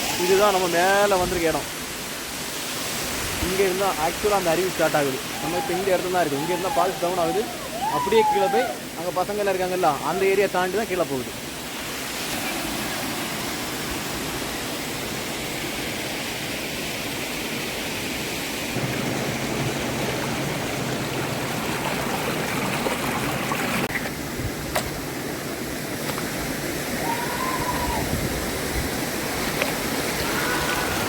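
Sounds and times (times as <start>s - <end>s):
waterfall rushing over rock: 0.0s - 31.0s.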